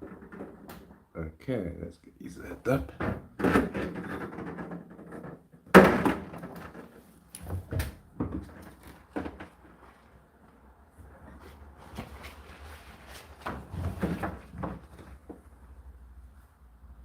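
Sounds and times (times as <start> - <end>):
soft knocks and clatters: 0.0 - 1.1, 3.0 - 10.1.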